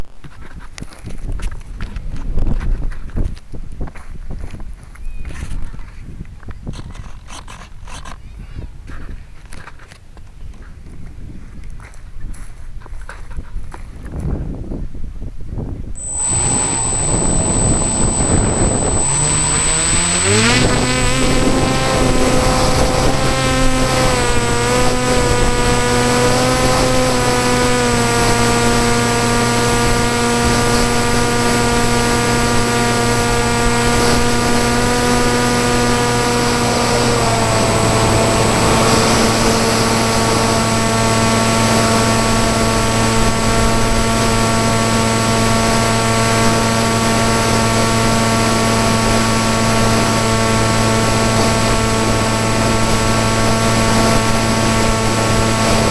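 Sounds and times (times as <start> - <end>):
electric motor and propeller whine: 16.0 - 55.9.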